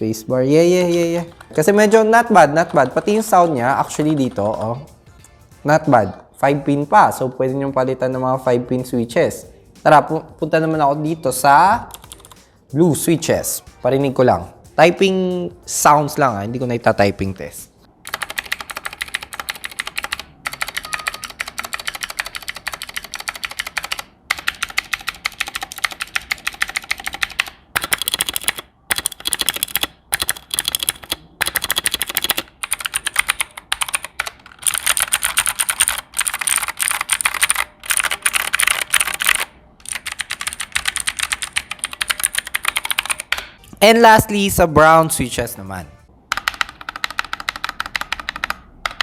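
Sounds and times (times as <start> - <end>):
mechanical keyboard key clicks: 18.0 - 43.5, 46.3 - 49.0.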